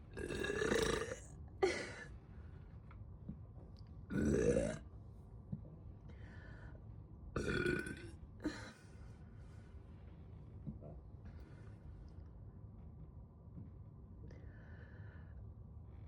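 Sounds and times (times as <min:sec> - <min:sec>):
person burping loudly: 0:00.2 - 0:01.9, 0:04.1 - 0:04.8, 0:07.4 - 0:08.6.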